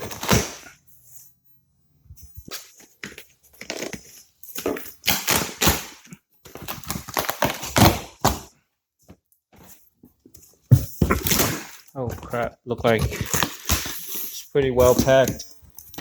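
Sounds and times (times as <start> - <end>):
cardboard box packing rustling: 0.0 - 0.8, 9.6 - 16.0.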